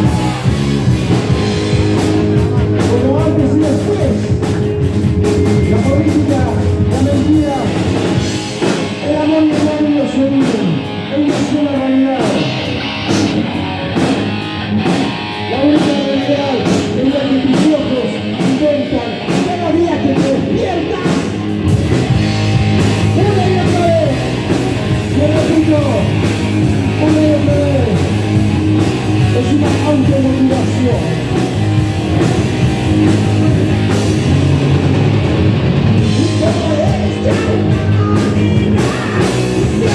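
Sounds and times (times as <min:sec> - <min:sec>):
bass guitar: 0:00.0 - 0:39.9
drums: 0:00.0 - 0:39.9
electric guitar: 0:00.0 - 0:39.9
rock song: 0:00.0 - 0:39.9
person singing: 0:36.0 - 0:39.9.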